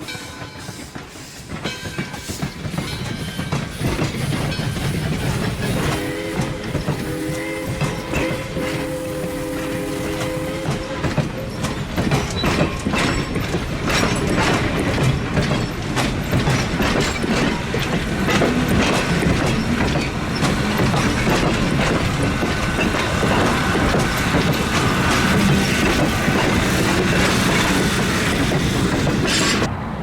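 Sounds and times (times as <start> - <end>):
wheels clicking over rail joints: 0.0 - 29.7
train rumbling past: 0.0 - 30.0
steam locomotive chime whistle: 2.1 - 12.6.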